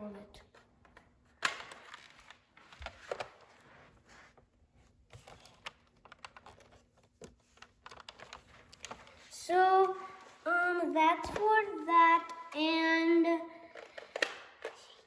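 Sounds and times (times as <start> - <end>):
plastic clicks and taps: 13.8 - 14.8.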